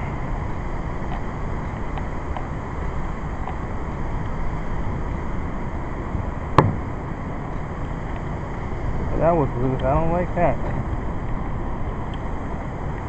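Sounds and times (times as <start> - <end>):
steady low rumble: 0.0 - 13.0
sharp knock of loose object: 6.6 - 6.9.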